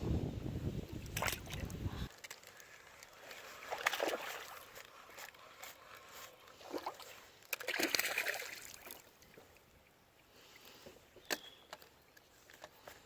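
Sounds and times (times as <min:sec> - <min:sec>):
water splashing against kayak: 0:00.9 - 0:09.6.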